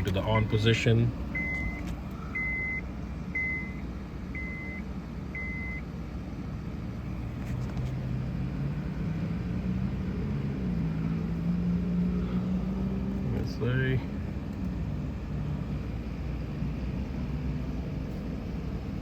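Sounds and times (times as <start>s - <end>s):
steady low hum: 0.0s - 19.0s
high electronic warning beeps: 1.3s - 5.8s.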